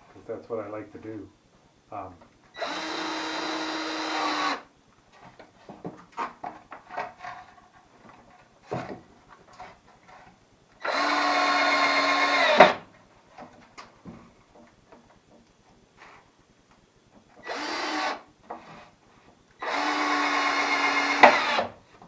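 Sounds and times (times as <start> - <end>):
power drill driving screws: 2.6 - 4.6, 10.8 - 12.8, 17.4 - 18.2, 19.6 - 21.8.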